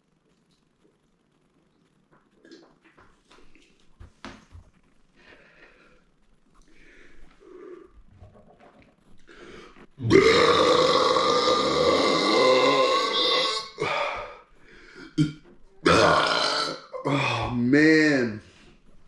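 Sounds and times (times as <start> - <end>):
man burping: 10.0 - 14.4, 15.0 - 17.7.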